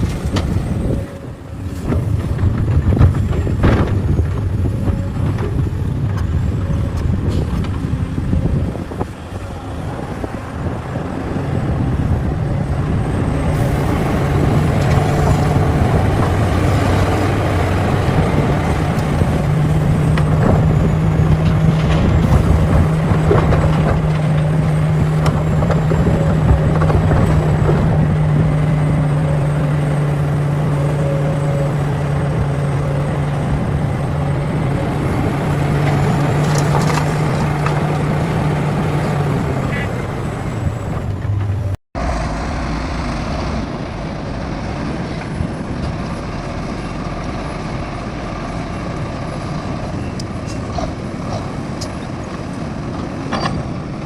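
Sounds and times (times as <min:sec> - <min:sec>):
heavy diesel machinery running: 0:00.0 - 0:54.0.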